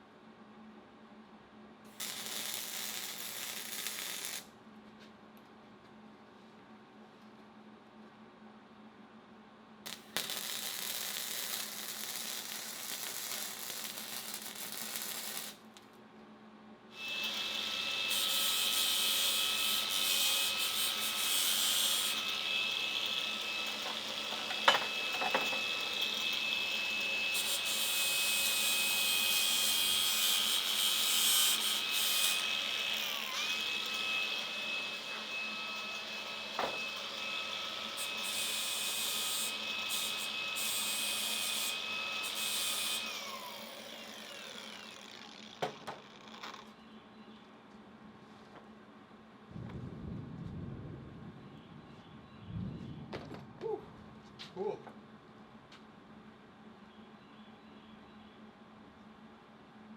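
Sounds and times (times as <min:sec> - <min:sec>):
electric drill boring through steel: 0:02.0 - 0:04.4, 0:09.9 - 0:15.6, 0:17.0 - 0:46.7.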